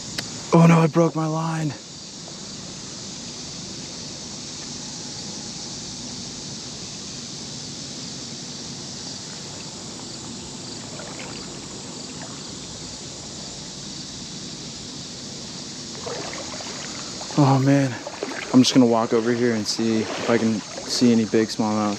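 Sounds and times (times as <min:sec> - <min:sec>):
traffic hum: 0:00.0 - 0:21.9
creek water running: 0:08.7 - 0:21.9.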